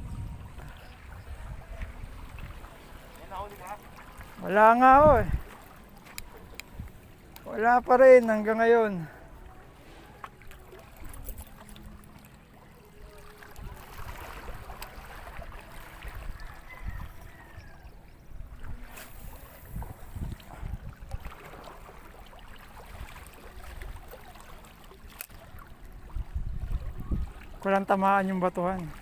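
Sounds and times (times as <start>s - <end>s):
wind buffeting microphone: 0.0s - 3.5s, 4.7s - 7.0s, 16.0s - 21.7s, 25.9s - 27.6s.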